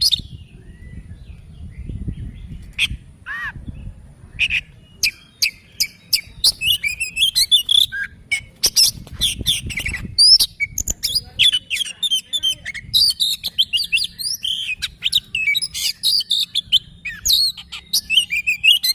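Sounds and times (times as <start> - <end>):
bird singing chirps and whistles: 0.0 - 18.9
sharp bird clicks: 4.4 - 18.9.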